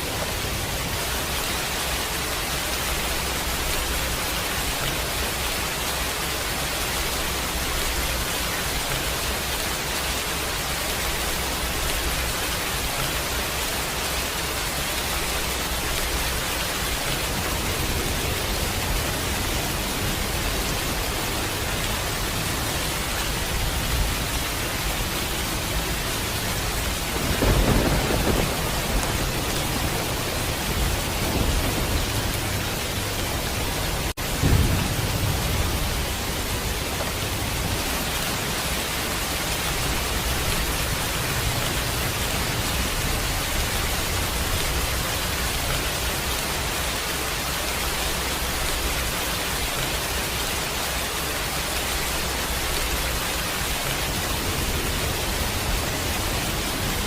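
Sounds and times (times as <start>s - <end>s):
heavy rain: 0.0s - 57.0s
low rolls of thunder: 26.5s - 38.8s.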